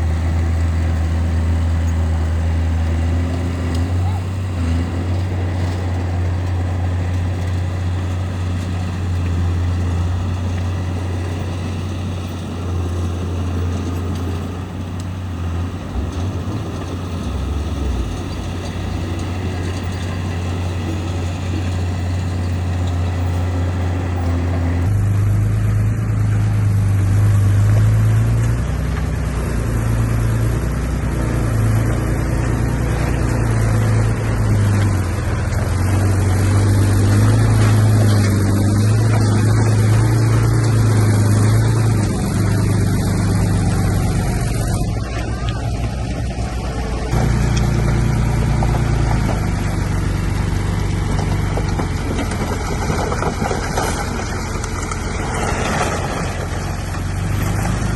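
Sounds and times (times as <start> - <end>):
bulldozer diesel engine running: 0.0 - 57.9.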